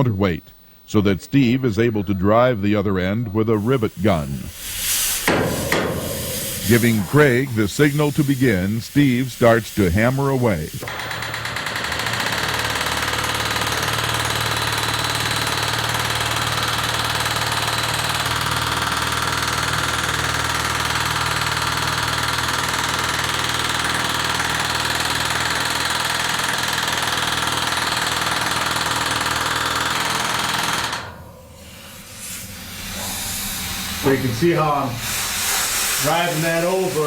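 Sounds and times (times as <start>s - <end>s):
rivet gun hammering on metal: 4.8s - 7.1s.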